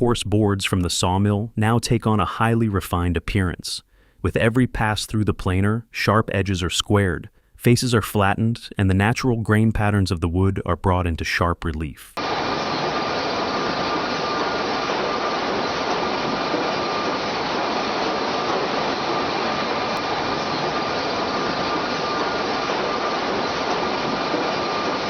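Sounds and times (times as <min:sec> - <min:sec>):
faint high whine: 0:12.2 - 0:25.0
planer machine running: 0:12.2 - 0:25.0.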